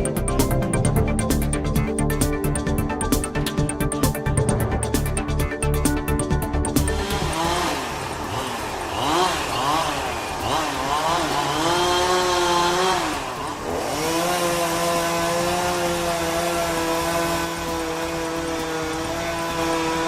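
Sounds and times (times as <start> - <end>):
chainsaw engine revving: 6.5 - 20.0.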